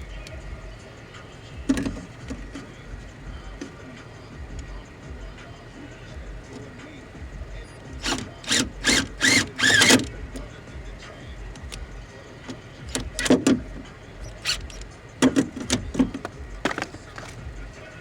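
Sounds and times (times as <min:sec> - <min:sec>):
cordless drill squealing: 0:07.5 - 0:10.1, 0:14.2 - 0:14.9.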